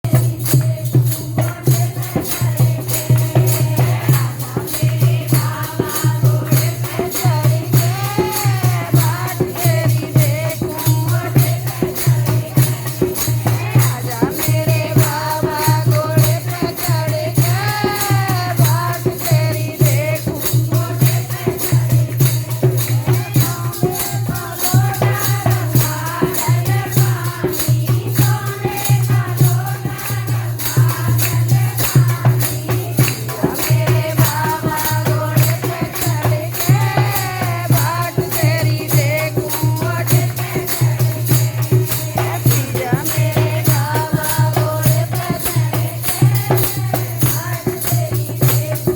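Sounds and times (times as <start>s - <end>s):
jingling hand percussion: 0.0s - 48.9s
person singing: 42.2s - 44.4s.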